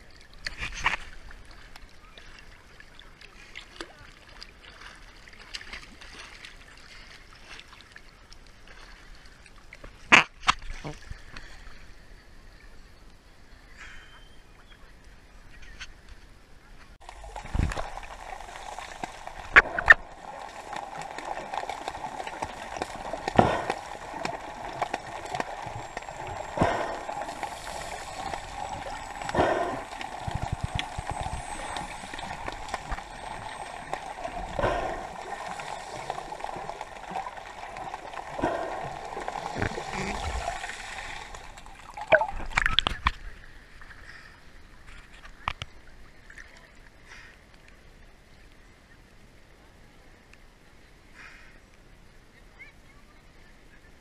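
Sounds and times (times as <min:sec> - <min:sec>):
water lapping at shore: 0:00.0 - 0:11.9, 0:17.0 - 0:47.8.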